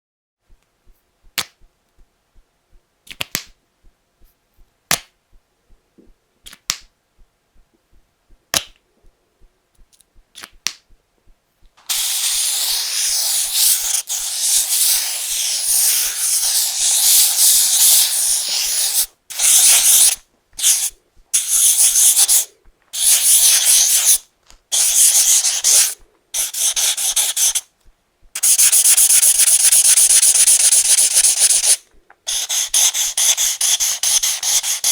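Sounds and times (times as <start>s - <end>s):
felt tip scratching paper: 11.8s - 27.7s, 28.4s - 34.9s.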